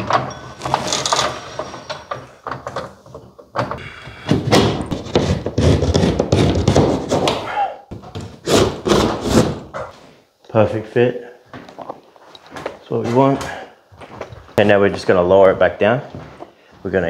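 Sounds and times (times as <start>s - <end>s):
plasterboard knocking: 3.6s - 9.6s
plasterboard rubbing and bumping: 4.3s - 9.8s.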